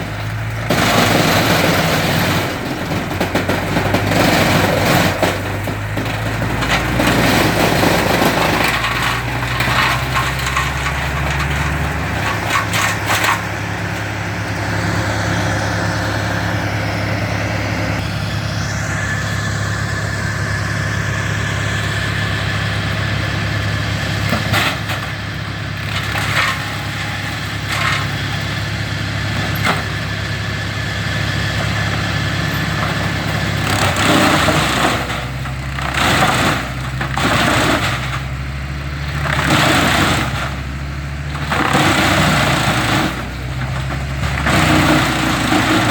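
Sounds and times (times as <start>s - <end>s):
wood cracking and splintering: 0.0s - 14.1s, 24.1s - 30.6s, 31.4s - 45.9s
engine running: 0.0s - 45.9s.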